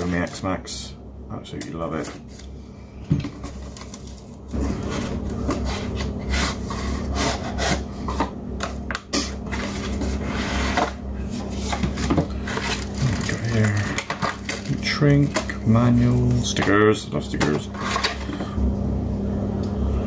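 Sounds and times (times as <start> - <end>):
packaging rustling and crackling: 3.2 - 6.0, 11.6 - 16.7.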